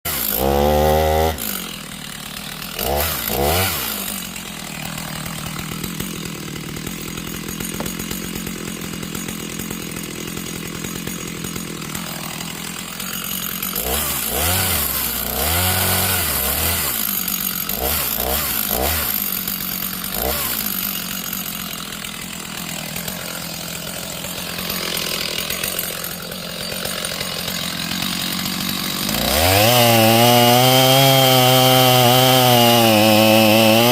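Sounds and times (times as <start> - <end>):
chainsaw cutting wood: 0.0 - 33.9.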